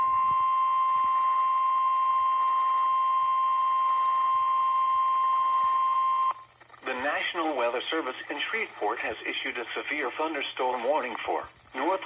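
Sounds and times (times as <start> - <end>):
steady alarm tone: 0.0 - 12.0
faint radio hiss: 6.4 - 12.0.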